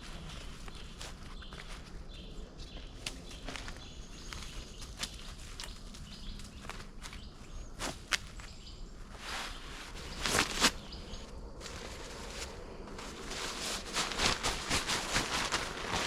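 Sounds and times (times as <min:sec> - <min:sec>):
footsteps in dry leaves: 0:00.0 - 0:16.0
twigs snapping: 0:03.0 - 0:08.6.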